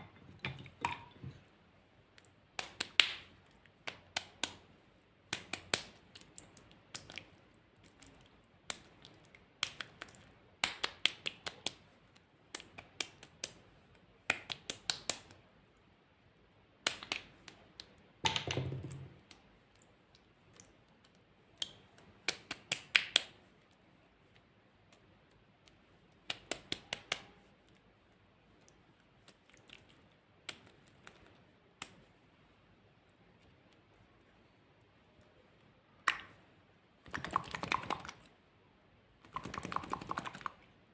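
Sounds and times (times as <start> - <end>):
slime squelch: 28.6 - 31.4.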